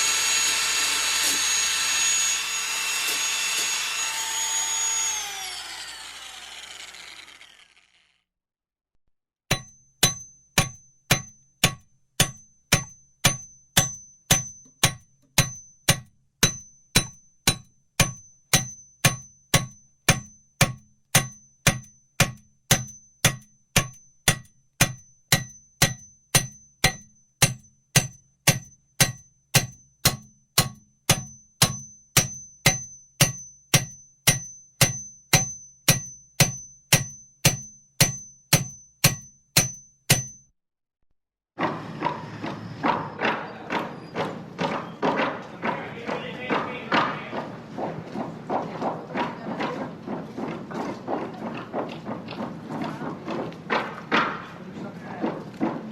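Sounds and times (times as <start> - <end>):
hammer striking metal: 9.5 - 40.5.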